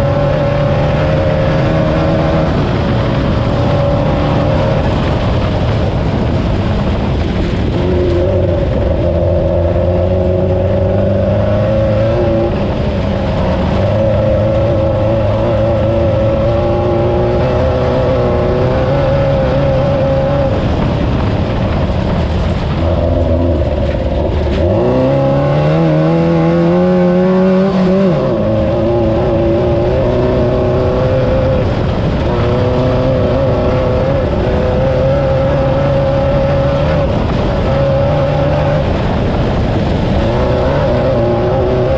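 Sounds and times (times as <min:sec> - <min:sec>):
buggy engine running hard: 0:00.0 - 0:41.9.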